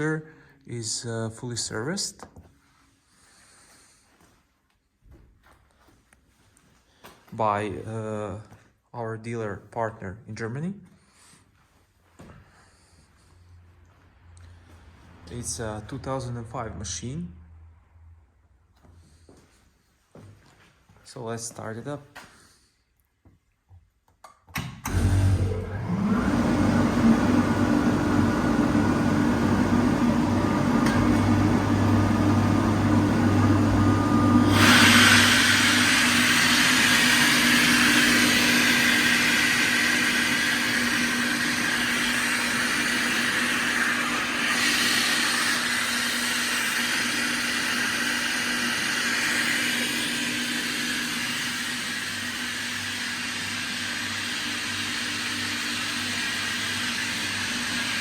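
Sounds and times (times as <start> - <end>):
air compressor motor hum: 24.6 - 58.0.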